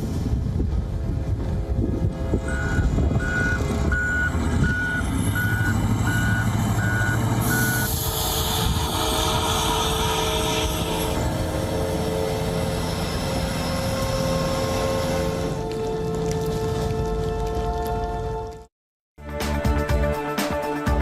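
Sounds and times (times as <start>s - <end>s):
vehicle engine running low: 0.0s - 18.2s
reversing alarm beeps: 2.5s - 7.9s.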